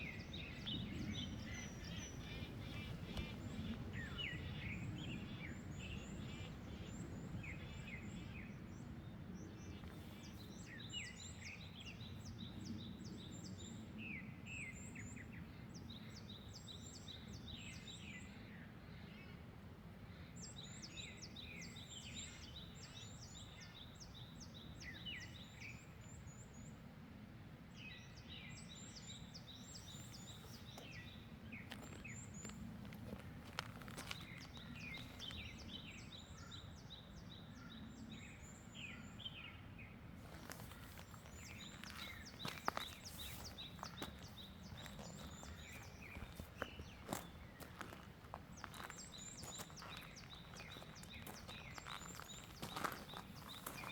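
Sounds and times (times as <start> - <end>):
small songbirds chirping: 0.0 - 27.0, 27.7 - 53.9
low wind rumble: 0.0 - 53.9.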